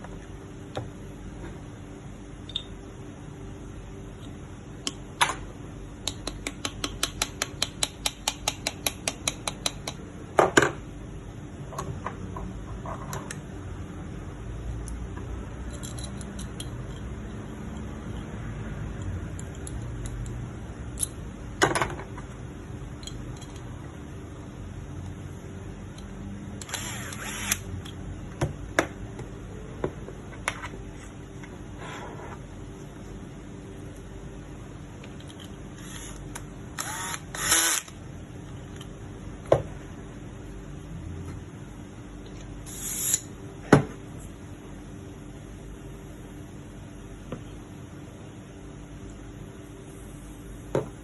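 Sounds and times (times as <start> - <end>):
steady low hum: 0.0 - 51.0
metal parts clicking and clinking: 15.6 - 18.3, 19.0 - 21.2, 23.0 - 23.7, 35.0 - 35.6.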